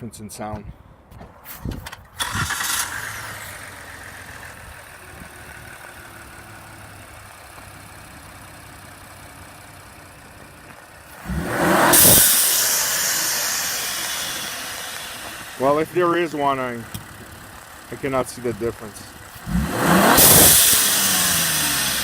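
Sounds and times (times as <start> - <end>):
car engine idling: 2.1 - 22.0
engine revving: 2.2 - 7.2, 11.0 - 22.0.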